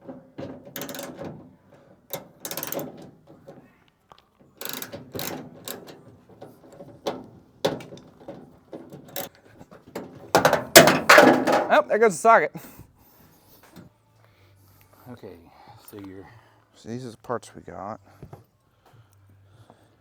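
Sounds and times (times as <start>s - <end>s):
ratchet wrench clicking: 0.7s - 3.4s, 4.6s - 7.2s, 9.1s - 9.4s.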